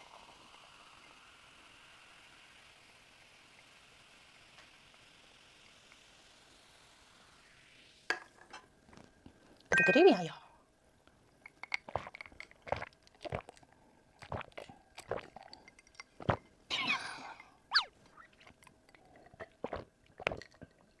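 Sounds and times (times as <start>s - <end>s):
wet mouth clicks and smacks: 11.4s - 16.5s, 17.8s - 20.7s
person chewing food: 11.5s - 16.5s, 17.8s - 21.0s
short falling squeak: 17.7s - 17.9s.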